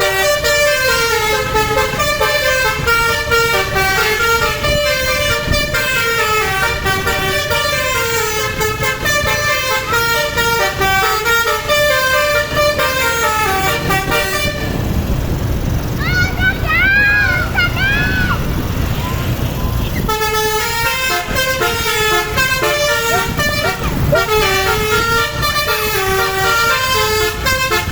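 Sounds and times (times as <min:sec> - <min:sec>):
multi-tone bus horn melody: 0:00.0 - 0:15.8, 0:18.5 - 0:27.9
bus engine rumble: 0:00.0 - 0:27.9.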